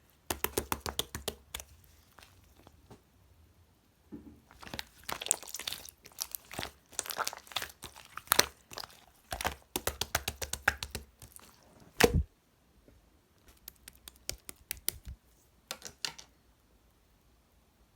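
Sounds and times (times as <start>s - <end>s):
slime crackling and popping: 4.5s - 12.3s.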